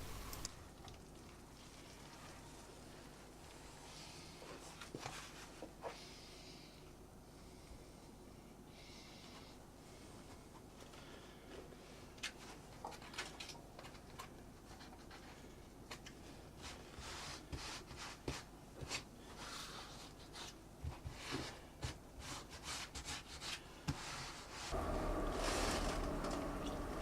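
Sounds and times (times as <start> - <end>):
hand rubbing plaster cloth: 16.6 - 27.0.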